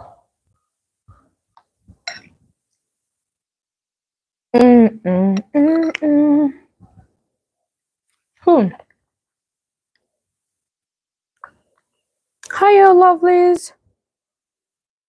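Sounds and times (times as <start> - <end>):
woman humming: 4.6 - 6.7.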